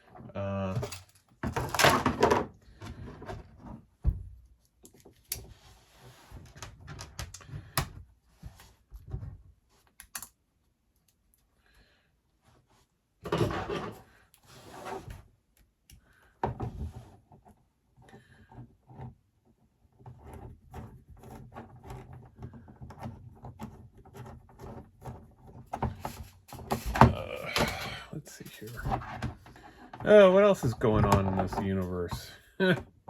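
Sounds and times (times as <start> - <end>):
clicks and knocks of parts handled: 0.7 - 3.8, 6.4 - 8.0, 9.8 - 11.5.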